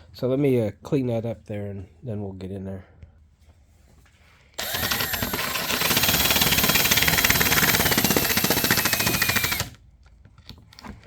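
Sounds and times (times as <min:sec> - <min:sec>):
power wire brush grinding plastic: 0:04.6 - 0:09.8.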